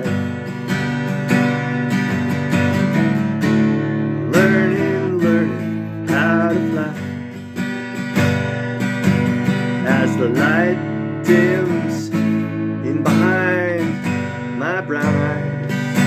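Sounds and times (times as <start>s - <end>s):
acoustic guitar strumming: 0.0s - 16.0s
wordless vocal line: 3.8s - 7.3s, 8.4s - 15.7s.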